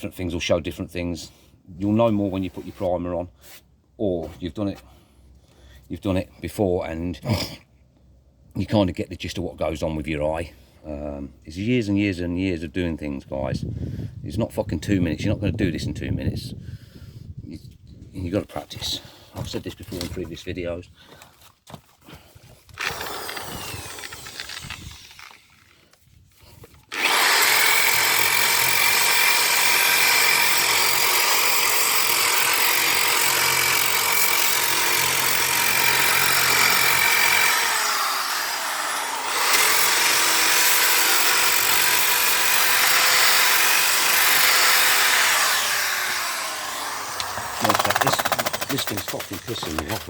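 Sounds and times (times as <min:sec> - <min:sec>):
power sander rasping with whine: 0:22.8 - 0:25.4, 0:26.9 - 0:50.0.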